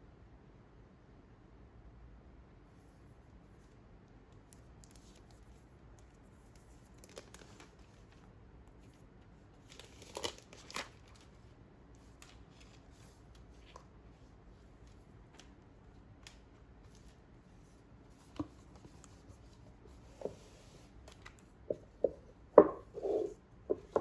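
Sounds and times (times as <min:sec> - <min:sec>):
packaging tearing and crinkling: 0:09.7 - 0:11.2.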